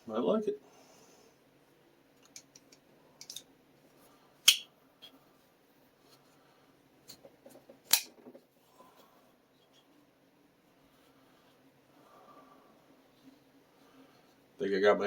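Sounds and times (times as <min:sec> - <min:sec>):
knife blade snapping: 0:07.9 - 0:08.1.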